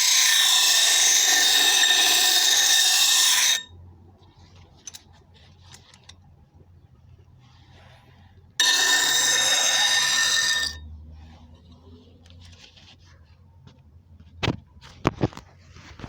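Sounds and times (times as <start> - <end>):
blade grinding on grinder wheel: 0.0 - 3.7, 8.6 - 10.8.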